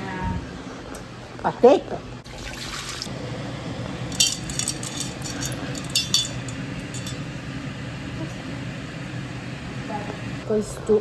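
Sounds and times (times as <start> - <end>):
low steady hum: 3.1 - 10.5
pot and utensils clinking: 4.1 - 7.4.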